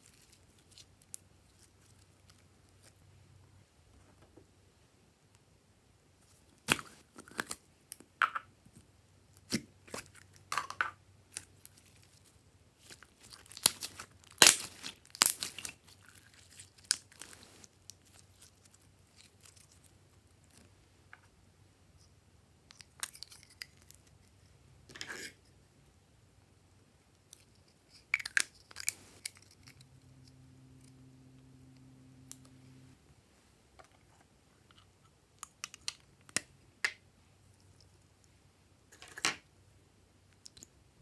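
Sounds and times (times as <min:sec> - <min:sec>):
slime popping and crackling: 0:12.8 - 0:18.6.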